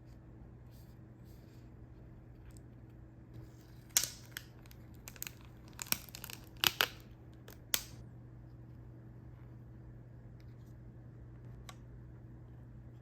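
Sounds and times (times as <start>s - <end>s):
plastic packaging crinkling: 3.5s - 7.8s.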